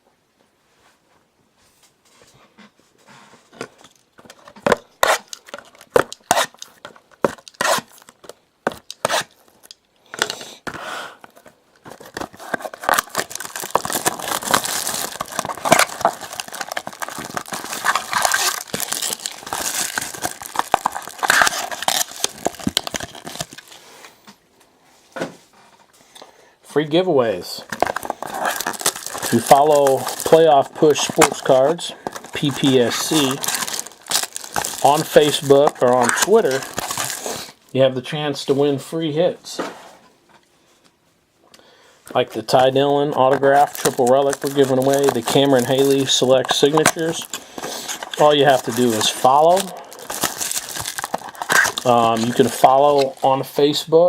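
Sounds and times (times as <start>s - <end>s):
wrapping crinkling and tearing: 4.3s - 9.8s, 11.3s - 23.9s, 27.6s - 37.8s, 42.1s - 53.8s.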